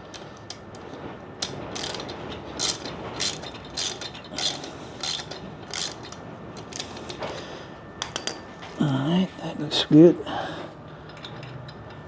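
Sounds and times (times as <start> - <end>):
ratchet wrench clicking: 1.4 - 6.9.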